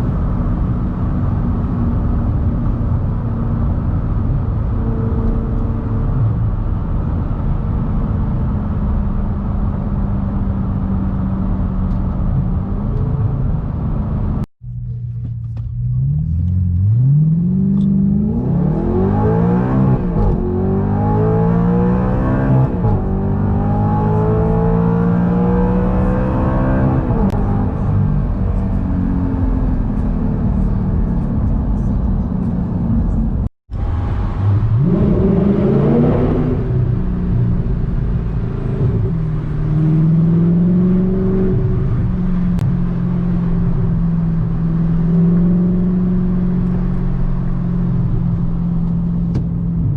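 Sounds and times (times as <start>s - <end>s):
car engine accelerating hard: 15.5s - 49.9s.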